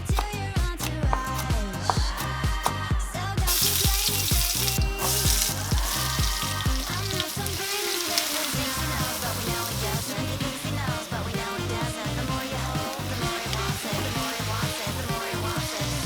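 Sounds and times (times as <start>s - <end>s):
background music with beat: 0.0s - 16.0s
food frying in hot oil: 3.5s - 16.0s.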